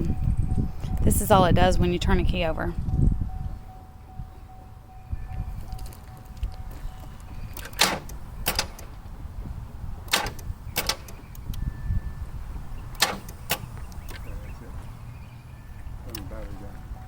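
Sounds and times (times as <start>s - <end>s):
car ignition clunking: 5.8s - 9.0s, 10.1s - 11.6s, 12.9s - 14.3s.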